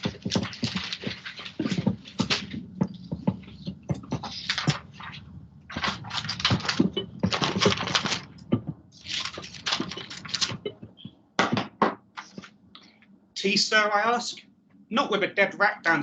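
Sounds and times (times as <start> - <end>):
rustling bursts: 0.0 - 11.0.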